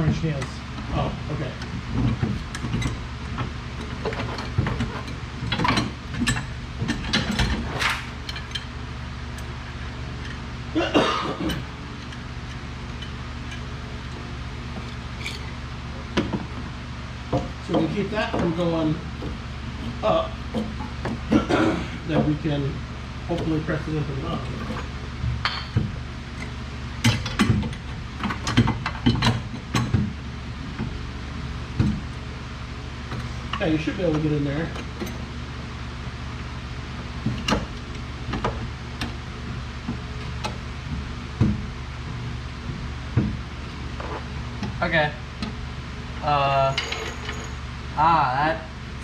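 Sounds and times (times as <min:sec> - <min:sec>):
steady low hum: 0:00.0 - 0:49.0
metal tools clanking on car parts: 0:03.8 - 0:08.7, 0:10.2 - 0:15.6, 0:23.3 - 0:25.8, 0:46.5 - 0:47.6
hand tools clicking and clanking: 0:46.6 - 0:47.6.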